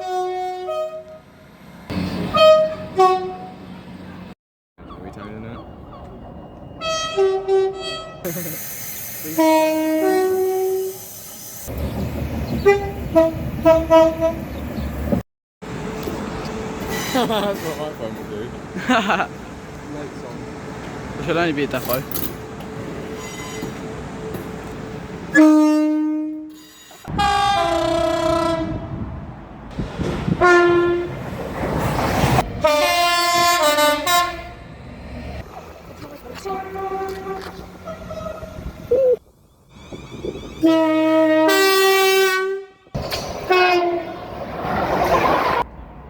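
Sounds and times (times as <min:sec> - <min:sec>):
train horn blasts: 0:00.0 - 0:01.3, 0:02.3 - 0:03.6, 0:06.8 - 0:08.3, 0:09.3 - 0:11.0, 0:12.6 - 0:14.5, 0:25.3 - 0:29.1, 0:30.4 - 0:31.2, 0:32.6 - 0:34.6, 0:36.4 - 0:38.7, 0:40.6 - 0:44.2.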